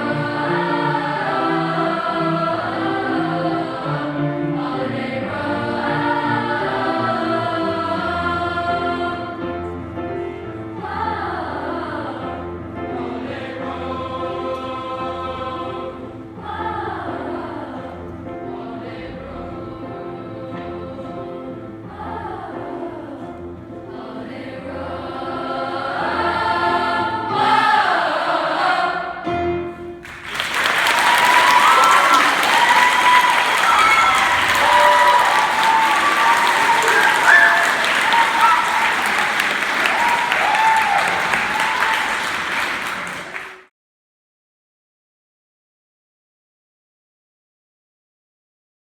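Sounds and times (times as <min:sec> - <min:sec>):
choir singing carols: 0:00.0 - 0:29.4, 0:30.1 - 0:43.5
applause: 0:30.0 - 0:43.7.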